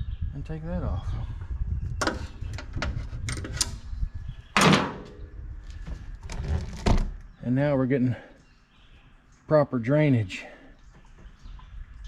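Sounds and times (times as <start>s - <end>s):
loud clunk: 4.6s - 5.2s.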